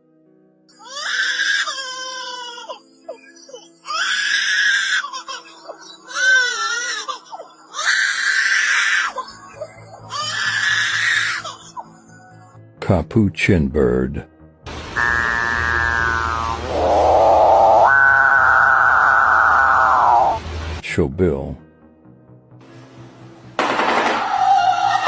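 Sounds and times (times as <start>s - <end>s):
faint background music: 0.0s - 17.2s, 20.3s - 25.0s
lyrebird harsh calls: 14.9s - 20.4s.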